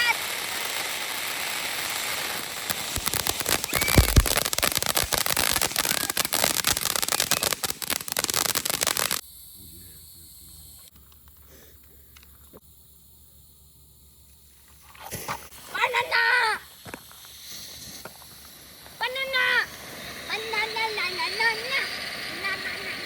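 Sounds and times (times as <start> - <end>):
rapid crackling pops: 0.0 - 9.2
firework hiss: 0.0 - 10.9, 14.7 - 23.0
firework bang: 2.2 - 9.2.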